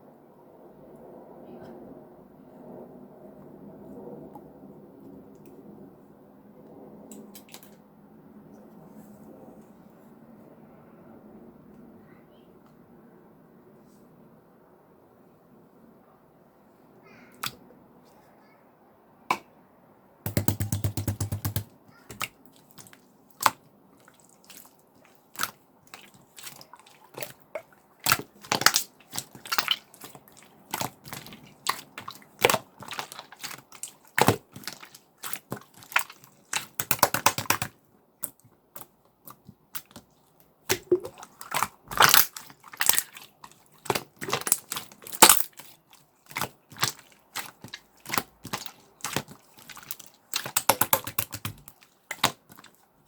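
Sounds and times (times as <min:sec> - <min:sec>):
slime squished by hand: 0:20.3 - 0:53.0.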